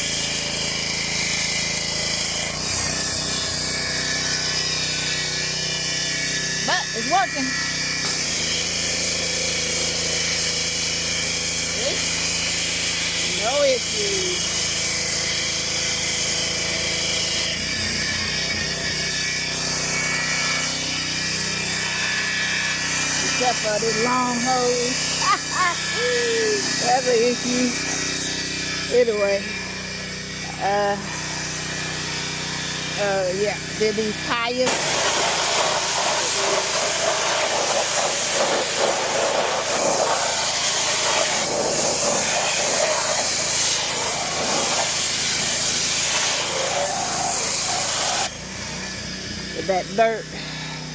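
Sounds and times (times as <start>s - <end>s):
pressure washer engine running: 0.0s - 50.9s.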